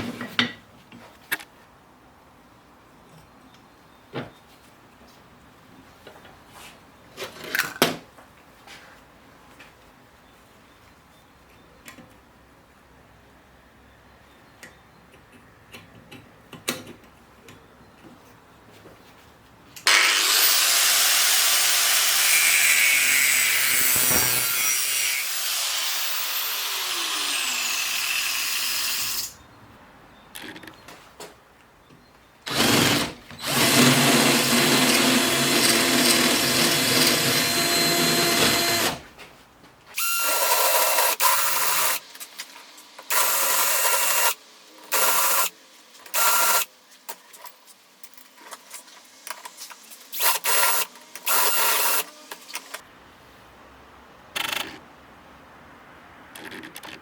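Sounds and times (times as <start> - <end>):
handheld power tool running: 19.9 - 29.3, 32.5 - 39.0, 50.1 - 52.7.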